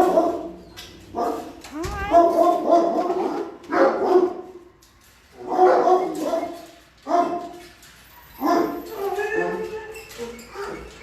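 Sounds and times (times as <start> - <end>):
dogs barking: 0.0 - 4.6, 5.4 - 7.6, 8.4 - 9.9.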